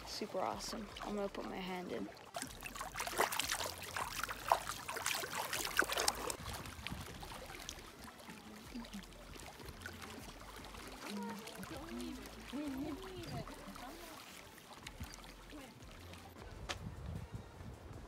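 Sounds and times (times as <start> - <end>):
lapping water: 0.0 - 16.4
hand splashing in water: 2.4 - 7.8.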